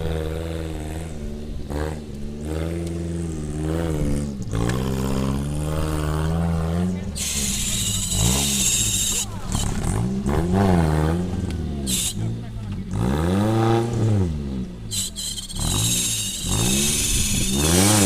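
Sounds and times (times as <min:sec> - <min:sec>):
off-road vehicle engine running: 0:00.0 - 0:18.0
people's voices: 0:05.4 - 0:18.0
loud hissing rush: 0:07.1 - 0:09.6.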